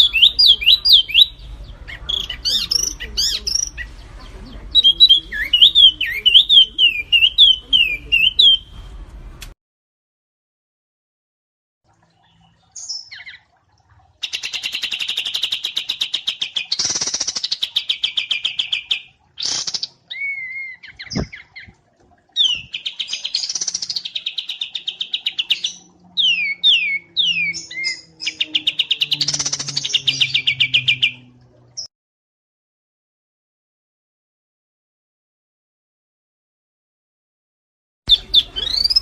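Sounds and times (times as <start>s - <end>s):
songbird high-pitched trills: 0.0s - 3.9s, 22.4s - 31.9s, 38.1s - 39.0s.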